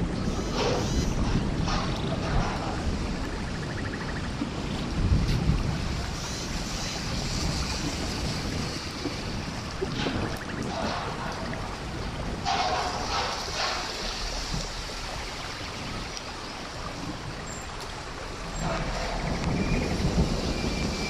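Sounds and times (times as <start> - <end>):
rush of water: 0.0 - 21.0
heavy rain pouring: 4.3 - 21.0.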